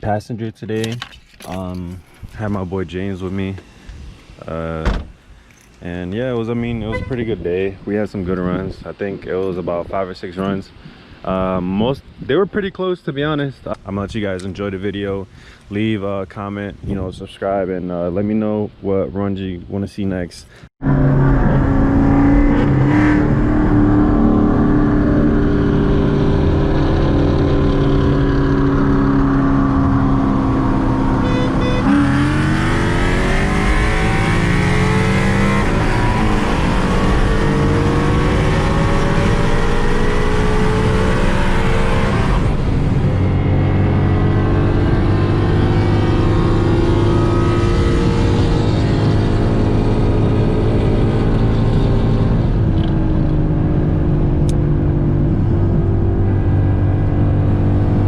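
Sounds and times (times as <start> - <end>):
car engine accelerating through gears: 20.8 - 58.0.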